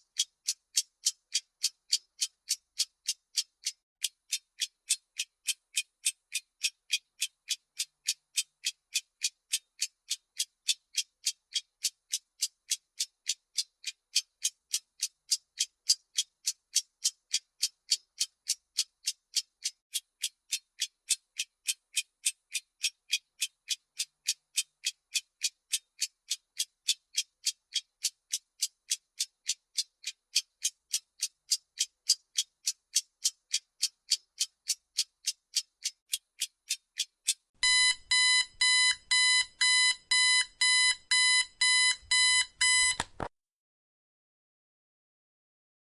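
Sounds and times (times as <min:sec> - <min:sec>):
clock ticking: 0:00.0 - 0:43.1
alarm beeping: 0:37.6 - 0:43.0.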